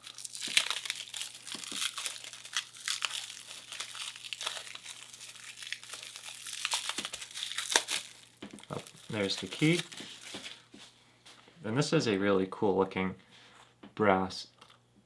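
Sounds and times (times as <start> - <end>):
plastic wrap crinkling and tearing: 0.0 - 10.8.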